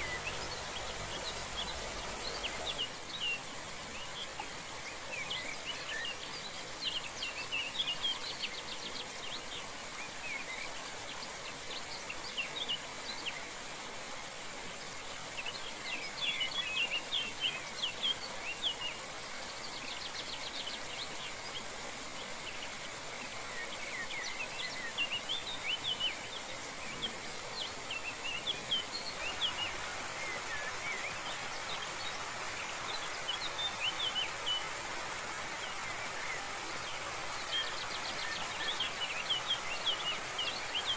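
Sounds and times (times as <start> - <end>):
waterfall rushing: 0.0 - 7.9, 20.6 - 40.9
birds chirping and twittering: 0.0 - 40.9.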